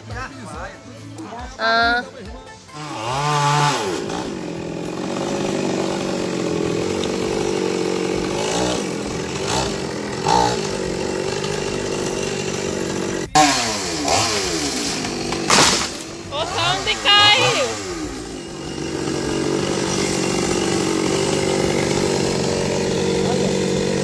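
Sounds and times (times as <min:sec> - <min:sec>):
chainsaw cutting through trunk: 0:02.7 - 0:24.0
sharp wood crack: 0:03.6 - 0:16.6.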